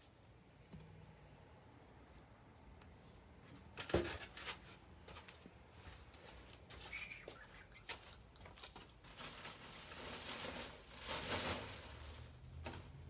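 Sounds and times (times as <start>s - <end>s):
rustling and crinkling: 3.4s - 13.0s.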